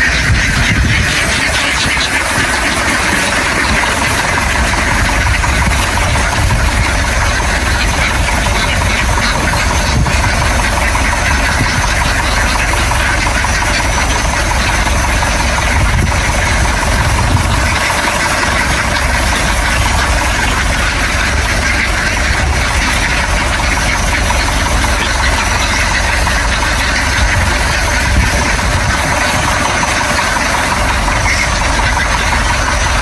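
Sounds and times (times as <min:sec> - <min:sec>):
engine running steadily: 0:00.0 - 0:33.0.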